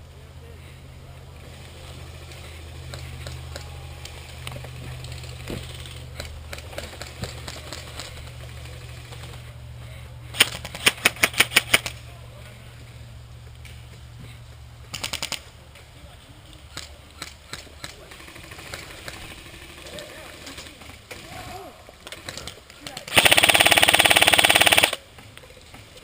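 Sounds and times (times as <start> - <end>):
airsoft rifle full-auto burst: 23.1 - 25.0
distant faint shots popping: 23.1 - 25.0.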